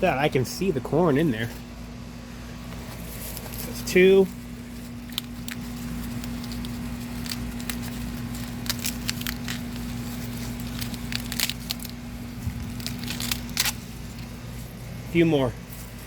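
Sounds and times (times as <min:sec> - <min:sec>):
corn leaves rustling: 0:00.0 - 0:16.0
corn ears snapping off stalks: 0:05.0 - 0:14.4.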